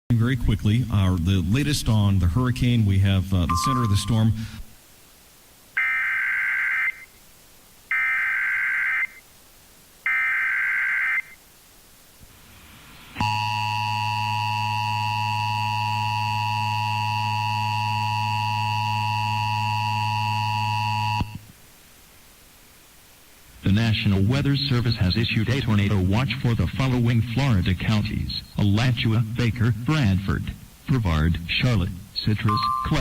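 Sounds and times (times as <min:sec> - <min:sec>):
harsh two-tone attention signal: 0:03.5 - 0:04.3, 0:32.4 - 0:33.0.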